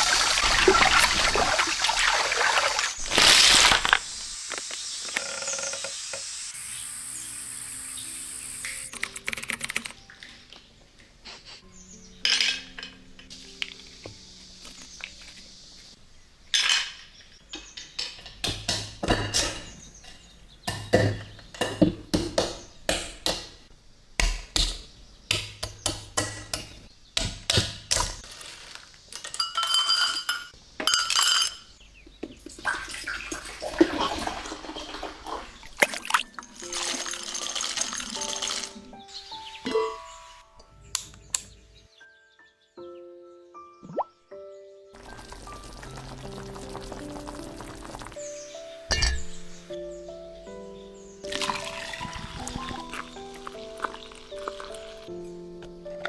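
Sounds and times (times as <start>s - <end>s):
liquid pouring: 0.0s - 4.3s, 32.5s - 38.8s, 45.0s - 48.2s, 51.3s - 55.1s
soft background music: 6.5s - 28.2s, 32.7s - 56.0s
tools clinking against glass: 29.2s - 31.7s, 48.9s - 49.4s.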